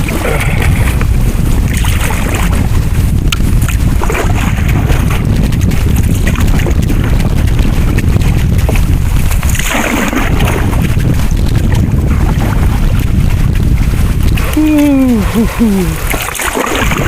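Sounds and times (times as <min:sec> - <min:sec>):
wind buffeting microphone: 0:00.0 - 0:17.0
rushing splash-like burst: 0:09.2 - 0:11.8, 0:12.4 - 0:17.0.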